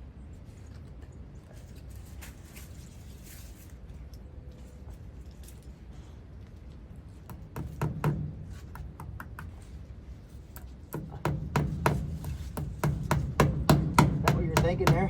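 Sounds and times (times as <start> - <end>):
sharp knocks and taps: 7.2 - 9.7, 10.5 - 15.0.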